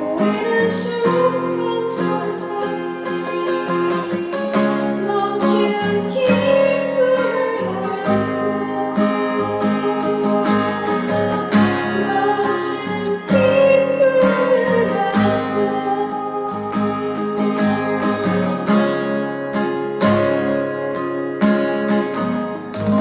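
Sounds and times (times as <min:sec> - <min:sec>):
acoustic guitar: 0:00.0 - 0:23.0.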